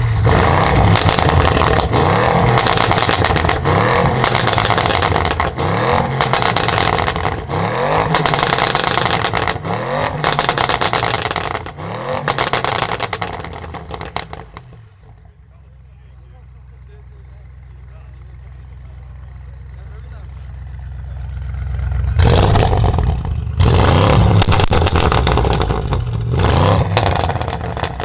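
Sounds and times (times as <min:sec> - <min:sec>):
car engine revving: 0:00.0 - 0:28.0
exhaust crackling and popping: 0:00.0 - 0:28.0.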